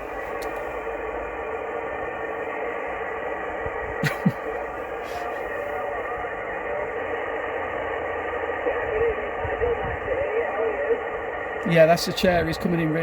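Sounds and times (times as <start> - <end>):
radio static hiss: 0.0 - 13.0
faint distant radio voice: 5.0 - 13.0.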